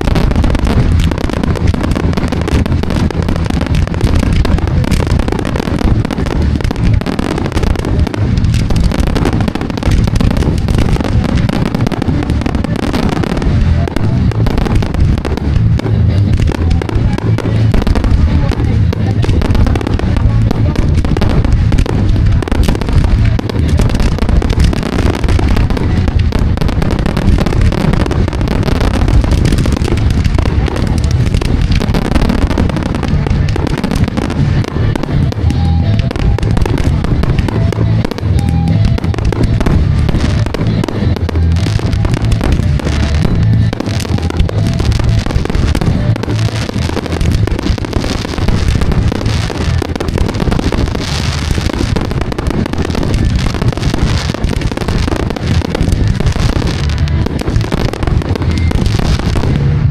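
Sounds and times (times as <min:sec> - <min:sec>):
fireworks booming and crackling: 0:00.0 - 0:59.9.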